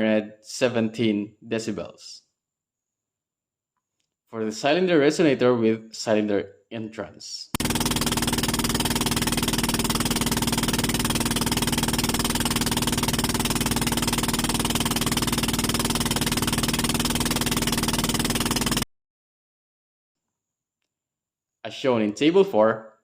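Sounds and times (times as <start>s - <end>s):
small engine running: 7.6s - 18.8s.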